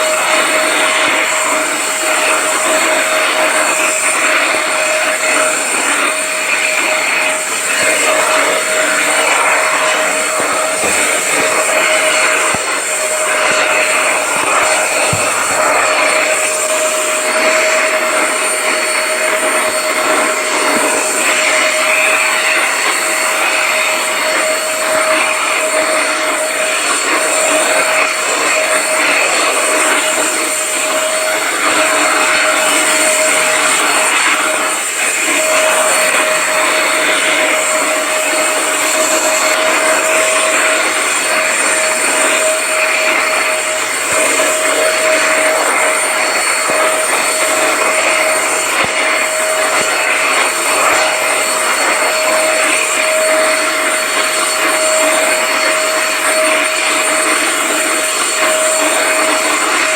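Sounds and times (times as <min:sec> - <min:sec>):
vacuum cleaner running: 0:00.0 - 0:59.9.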